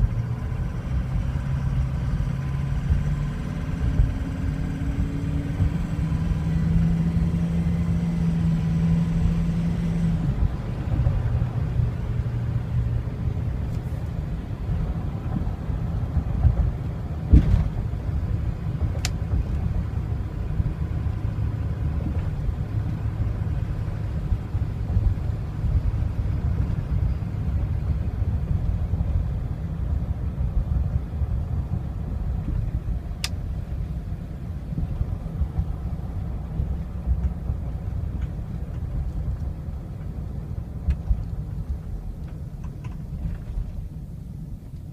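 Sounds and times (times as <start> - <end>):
diesel engine running: 0.0 - 44.9
thump: 17.3 - 17.8.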